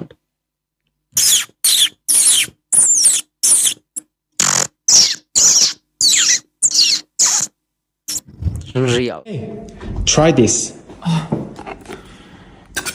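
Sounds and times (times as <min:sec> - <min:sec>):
high squeaks sliding down: 0:01.2 - 0:08.3.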